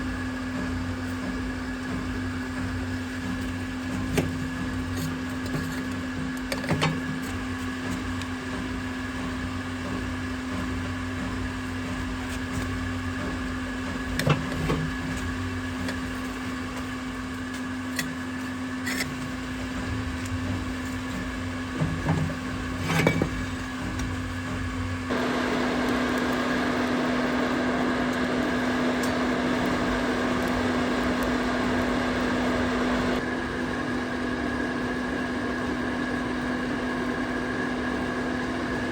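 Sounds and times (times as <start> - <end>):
motor hum: 0.0 - 38.9.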